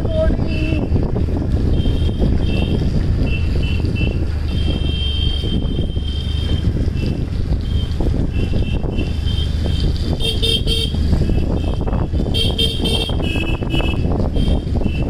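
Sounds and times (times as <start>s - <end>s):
vehicle engine rumble: 0.0s - 15.0s.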